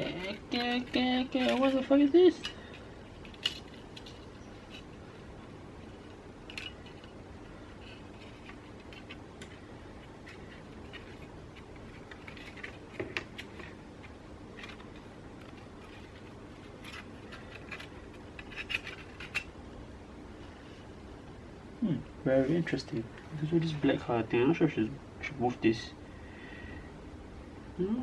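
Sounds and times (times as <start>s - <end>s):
small tools clicking and tapping: 0.0s - 4.9s.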